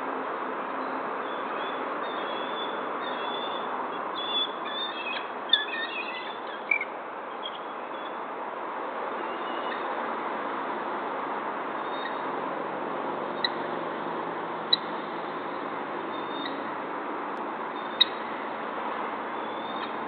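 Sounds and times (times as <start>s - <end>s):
steady background hiss: 0.0s - 20.0s
bird chirps: 0.8s - 8.2s, 16.1s - 16.7s, 17.8s - 18.2s.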